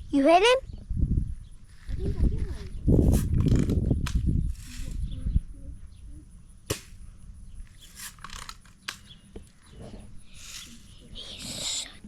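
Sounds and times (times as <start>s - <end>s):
small gun firing: 6.7s - 7.0s.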